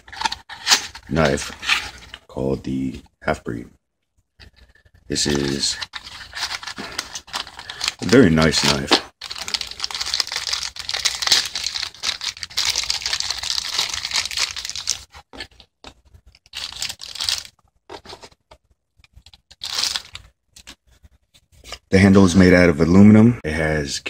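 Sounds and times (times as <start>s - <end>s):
crinkling rustling handling noise: 0.0s - 2.3s, 4.4s - 21.9s.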